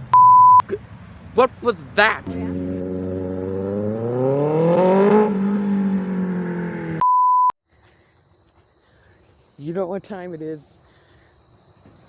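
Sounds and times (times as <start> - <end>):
vehicle engine accelerating: 2.0 - 7.0.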